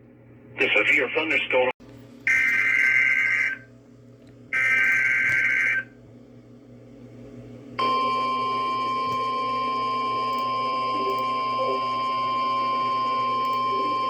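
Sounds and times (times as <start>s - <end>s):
steady warning alarm tone: 2.3s - 3.7s, 4.5s - 6.0s, 7.8s - 14.0s.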